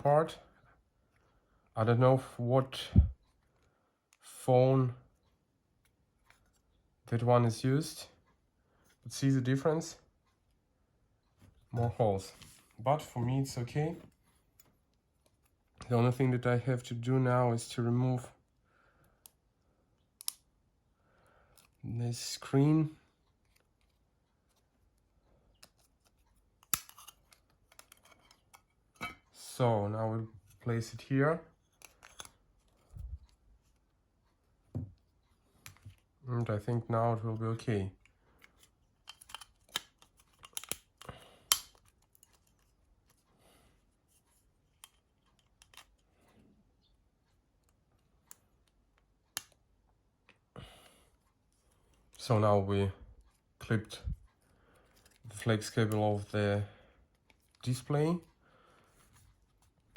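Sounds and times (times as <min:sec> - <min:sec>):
small phone parts clicking and scraping: 0:05.8 - 0:06.8, 0:23.4 - 0:29.3, 0:31.5 - 0:33.9, 0:37.3 - 0:43.3, 0:44.0 - 0:46.9, 0:54.4 - 0:56.0.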